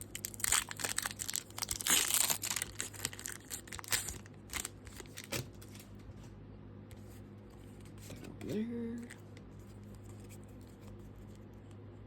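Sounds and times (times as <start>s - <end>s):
foil wrapper crinkling and tearing: 0.0s - 5.9s.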